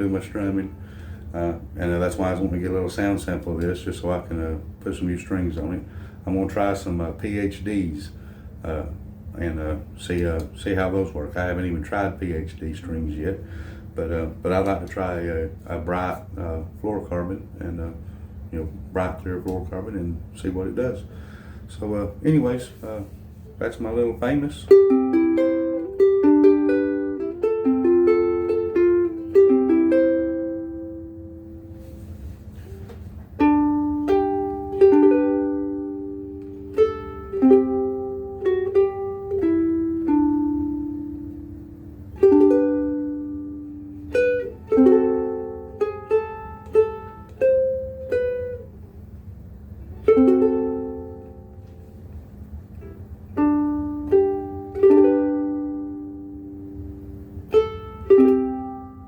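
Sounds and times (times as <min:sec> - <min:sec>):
ukulele plucked notes and chords: 0:24.0 - 0:49.0, 0:49.8 - 0:59.0.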